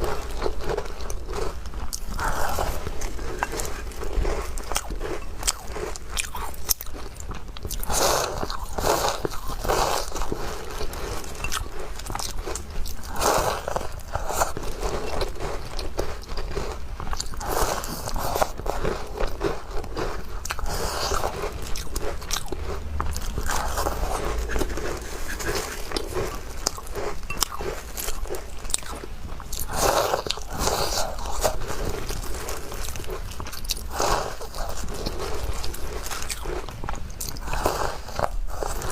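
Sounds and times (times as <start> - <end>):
chewing and crunching cookies: 0.0 - 38.9.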